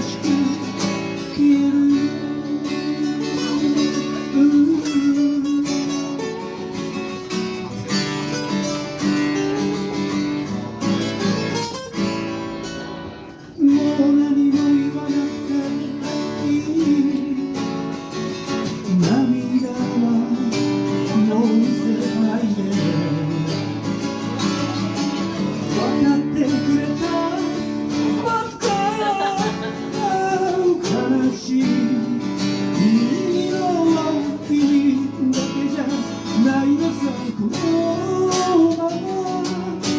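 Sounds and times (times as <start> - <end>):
acoustic guitar strumming chords: 0.0 - 39.9.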